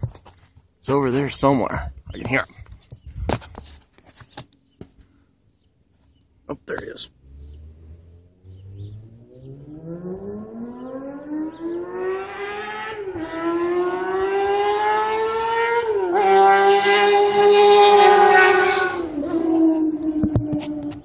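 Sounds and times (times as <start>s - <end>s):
sport bike accelerating: 7.1s - 21.0s.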